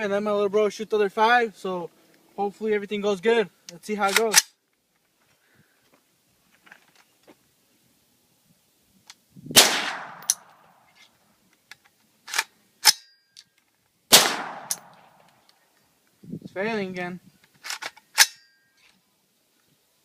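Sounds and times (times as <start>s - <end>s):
rifle action metallic clacks: 4.0s - 4.6s, 9.1s - 15.6s, 17.4s - 18.9s
rifle shots: 9.5s - 10.6s, 14.1s - 15.3s.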